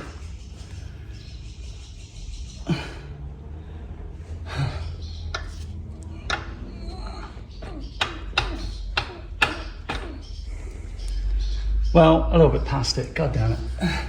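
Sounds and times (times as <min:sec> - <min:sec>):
steady low hum: 0:00.0 - 0:14.0
hand tool knocks and clicks: 0:07.7 - 0:10.2.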